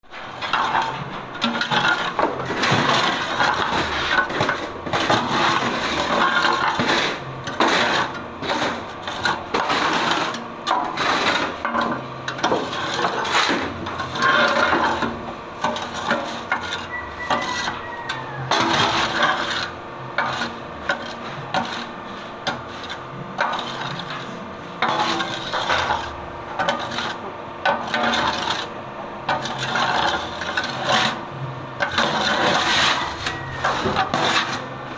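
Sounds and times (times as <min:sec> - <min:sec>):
scraping and knocking of press: 0:31.8 - 0:34.7.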